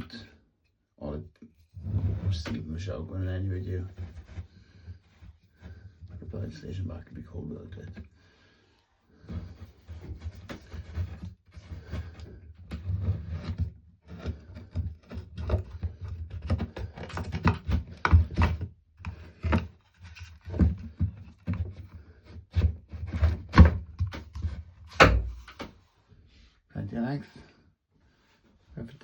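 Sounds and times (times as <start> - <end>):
knocks and thuds of handwork: 11.8 - 25.8.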